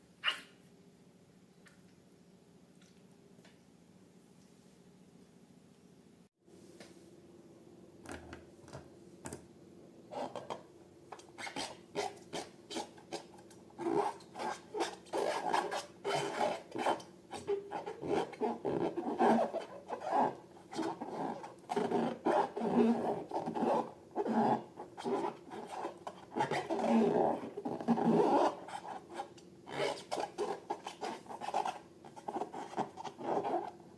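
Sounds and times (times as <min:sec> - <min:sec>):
rubbing and scraping balloons: 0:11.4 - 0:33.8.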